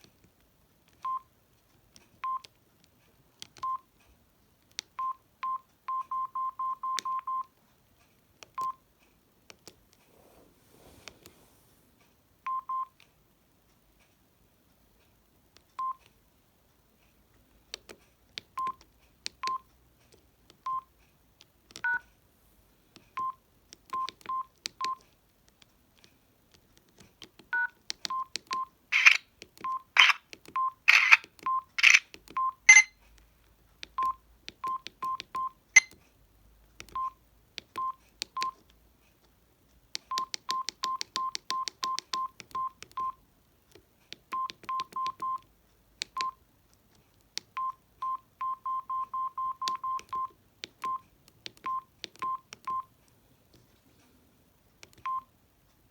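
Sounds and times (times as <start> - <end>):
mobile phone key beeps: 1.0 - 1.3, 2.2 - 2.5, 3.6 - 3.9, 5.0 - 7.5, 8.5 - 8.8, 12.5 - 12.9, 15.8 - 16.0, 18.6 - 18.8, 19.4 - 19.6, 20.6 - 20.9, 21.8 - 22.1, 23.2 - 25.0, 27.5 - 33.0, 34.0 - 36.0, 36.9 - 38.6, 40.1 - 43.2, 44.3 - 45.5, 46.1 - 46.4, 47.5 - 51.0, 51.6 - 52.9, 54.9 - 55.3.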